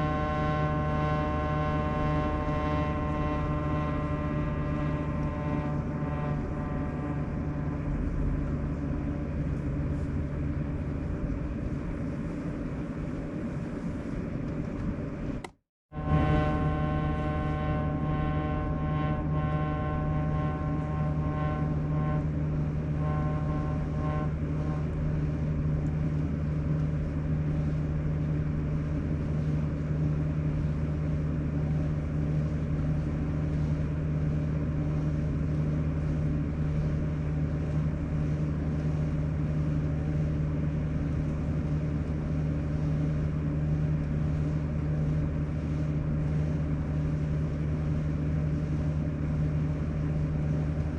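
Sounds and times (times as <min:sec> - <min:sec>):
high whining tones: 0:00.0 - 0:09.4, 0:15.9 - 0:25.4.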